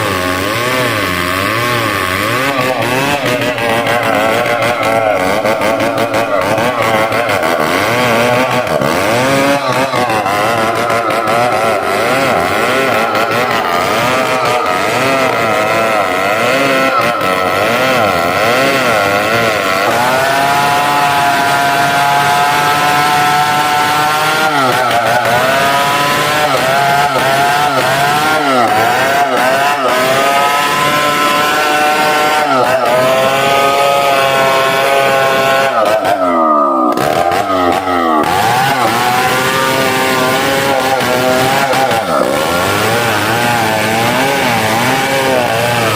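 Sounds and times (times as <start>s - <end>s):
chainsaw cutting tree trunk: 0.0s - 45.9s.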